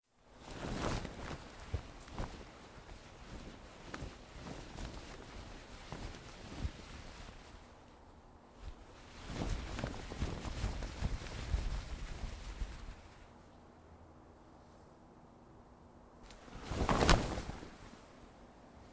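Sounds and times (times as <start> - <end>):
sail flapping in wind: 0.3 - 13.5, 16.2 - 18.9.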